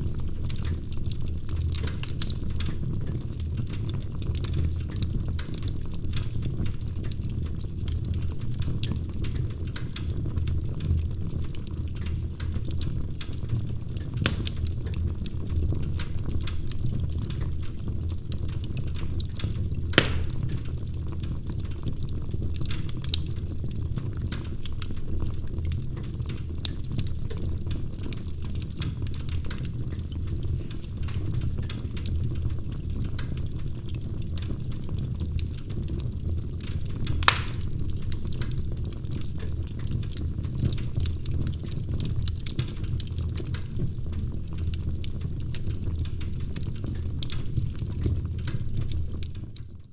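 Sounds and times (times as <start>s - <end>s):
wood fire crackling: 0.0s - 49.8s
fire low rumble: 10.9s - 26.4s, 35.3s - 49.4s
fire loud pop: 14.2s - 14.7s, 20.0s - 20.7s, 37.2s - 37.9s.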